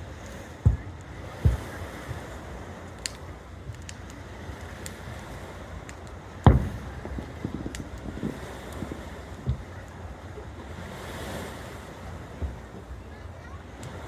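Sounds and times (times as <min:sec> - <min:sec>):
surf: 0:00.0 - 0:14.0
wind: 0:00.0 - 0:14.0
fireworks booming: 0:00.6 - 0:02.4, 0:05.7 - 0:09.9.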